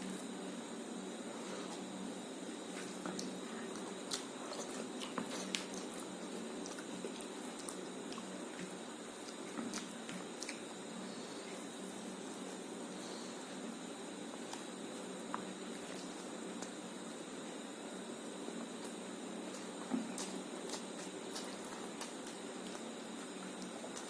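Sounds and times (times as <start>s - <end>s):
background hiss and hum: 0.0s - 24.0s
person chewing food: 2.5s - 13.5s, 18.6s - 24.0s.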